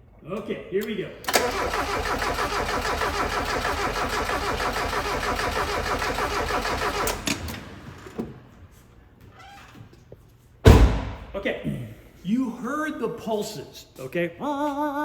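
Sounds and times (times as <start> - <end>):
engine cranking on starter: 1.2 - 8.7.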